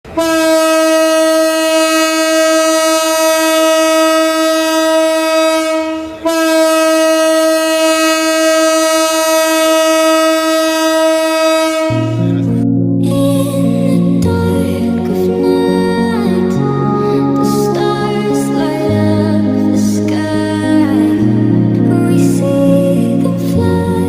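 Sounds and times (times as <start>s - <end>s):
train horn blasts: 0.1s - 12.5s
music: 11.8s - 24.0s.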